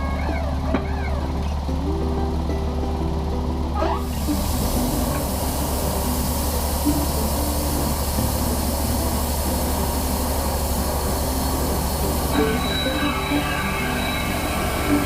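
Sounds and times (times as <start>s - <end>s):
machinery engine hum: 0.0s - 15.0s
rushing hiss: 4.0s - 15.0s.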